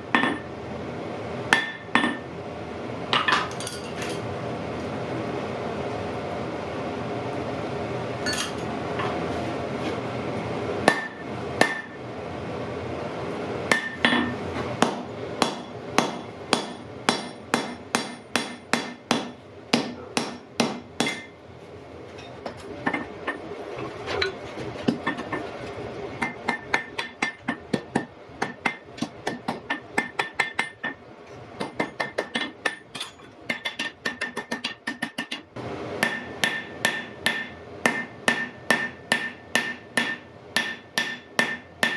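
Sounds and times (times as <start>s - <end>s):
hammer striking iron on anvil: 0.1s - 0.5s, 1.5s - 2.2s, 10.8s - 12.0s, 13.7s - 21.4s, 26.2s - 31.0s, 31.6s - 35.4s, 36.0s - 41.9s.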